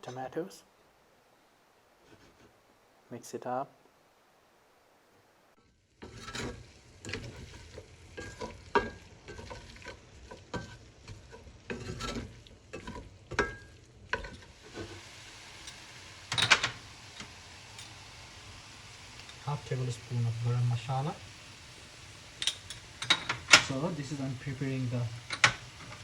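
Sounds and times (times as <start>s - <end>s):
frying sizzle: 5.5s - 26.0s
spoon scraping and knocking pot: 6.0s - 15.0s, 22.4s - 23.7s.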